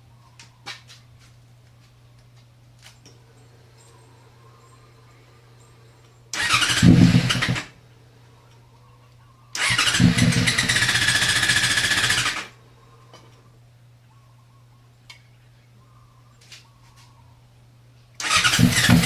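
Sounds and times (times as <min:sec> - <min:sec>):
motorcycle electric starter cranking: 0:06.3 - 0:07.7, 0:09.6 - 0:12.5, 0:18.2 - 0:19.0.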